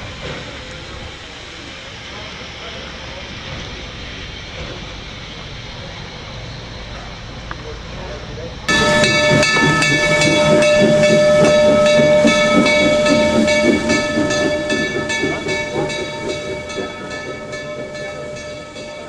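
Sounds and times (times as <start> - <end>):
hissing steam: 0.0 - 19.0
steam locomotive whistle tone: 8.7 - 19.0.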